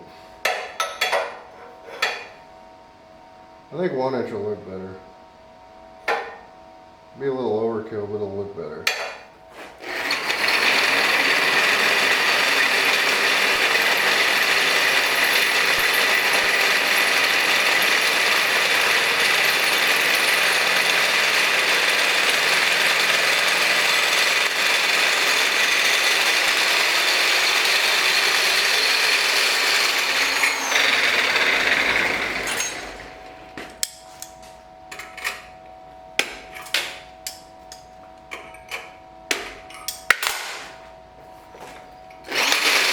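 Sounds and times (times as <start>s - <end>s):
power tool cutting metal: 9.5s - 33.4s, 42.2s - 42.9s.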